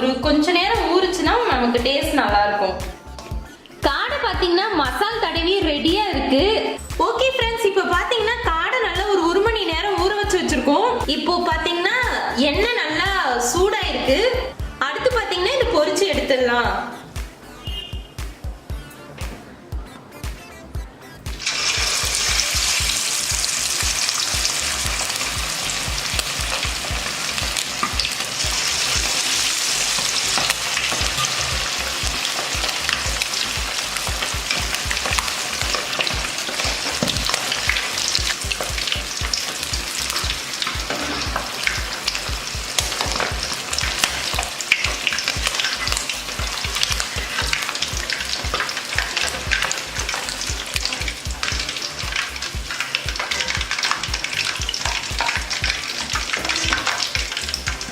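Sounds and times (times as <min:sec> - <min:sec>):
deep-frying sizzle and crackling: 0:21.3 - 0:57.9.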